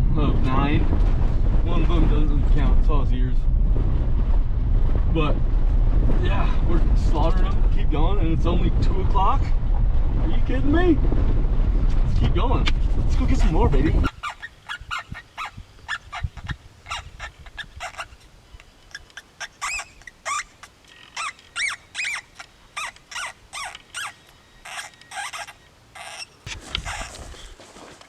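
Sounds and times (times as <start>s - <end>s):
electronic call squealing cries: 18.9s - 27.2s.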